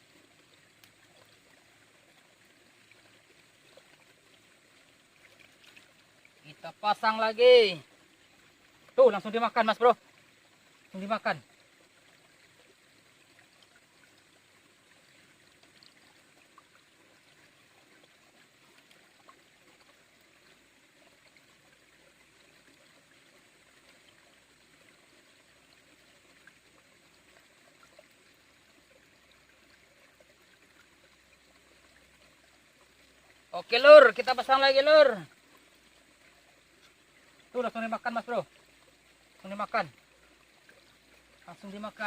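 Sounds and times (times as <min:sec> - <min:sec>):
stream trickling: 0:00.0 - 0:42.0
soft ticks: 0:00.7 - 0:01.0.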